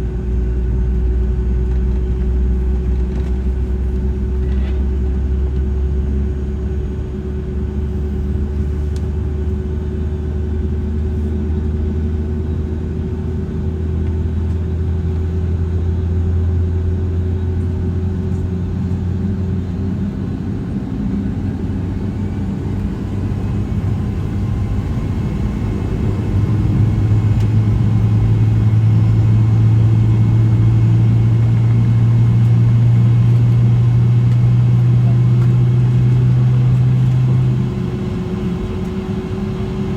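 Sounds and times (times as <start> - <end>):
airliner engine drone: 0.0 - 39.9.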